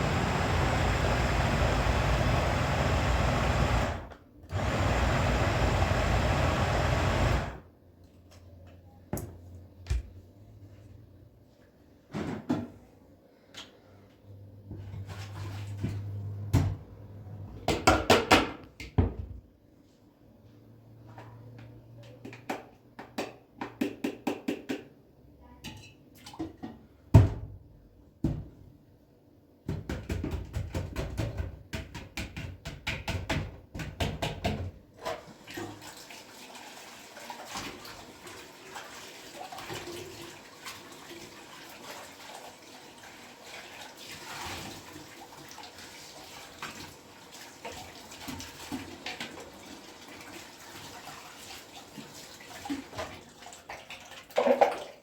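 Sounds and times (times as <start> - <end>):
water running from a tap: 35.4 - 54.9.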